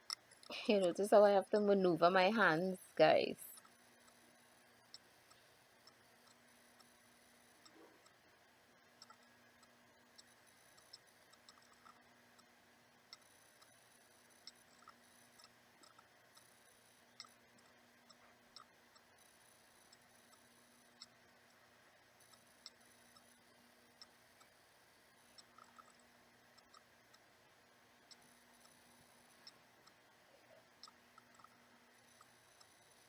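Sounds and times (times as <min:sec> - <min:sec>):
faint small clicks: 0:28.0 - 0:33.0.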